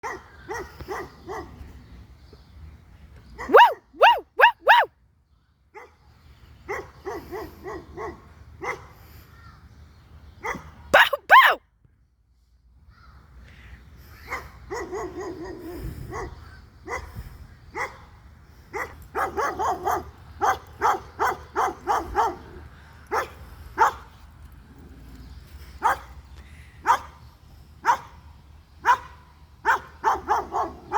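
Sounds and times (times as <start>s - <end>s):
dog barking: 0.0s - 1.6s, 3.4s - 4.9s, 6.7s - 8.9s, 10.4s - 11.6s, 14.3s - 17.1s, 17.8s - 18.0s, 18.8s - 22.5s, 23.1s - 24.0s, 25.8s - 26.1s, 26.8s - 27.1s, 27.8s - 28.1s, 28.8s - 30.9s.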